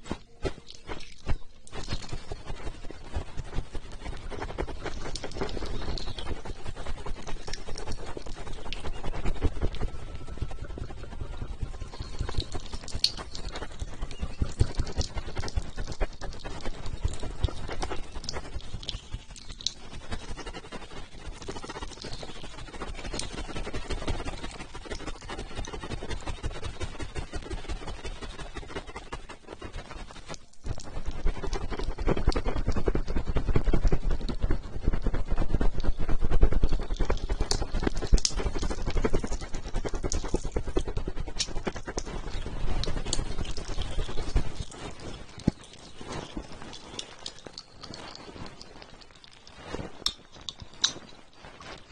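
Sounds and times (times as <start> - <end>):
wet clicks and taps: 0.5 - 2.5, 3.4 - 6.5, 7.1 - 9.9, 11.9 - 19.8, 36.9 - 51.2.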